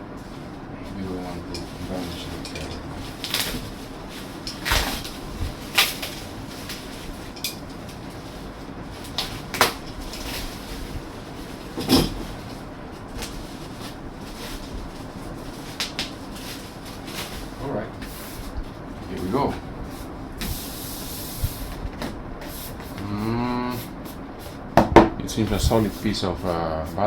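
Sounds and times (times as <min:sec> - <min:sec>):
packaging rustling: 0:01.8 - 0:18.6.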